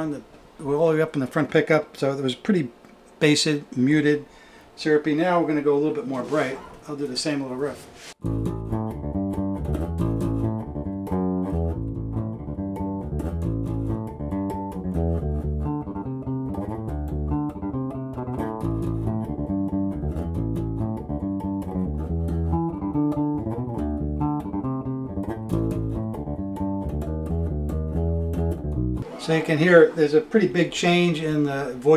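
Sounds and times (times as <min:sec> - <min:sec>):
electric bass plucked riff: 0:08.2 - 0:29.1.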